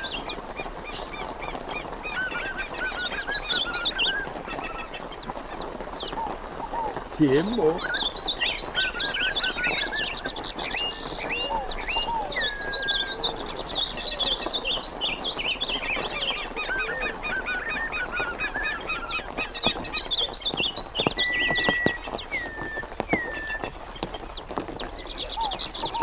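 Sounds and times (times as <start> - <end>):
animals chirping and whistling: 0.0 - 26.0.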